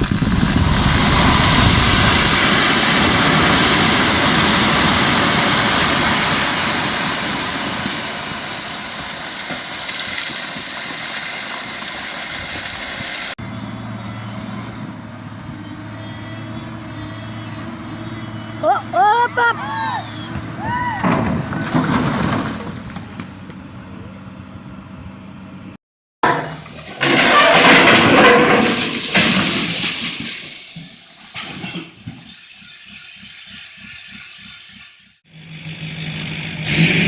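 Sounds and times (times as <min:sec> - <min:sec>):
heavy vehicle engine rushing: 0:00.0 - 0:25.8
engine idling hum: 0:13.4 - 0:21.9, 0:22.5 - 0:25.8.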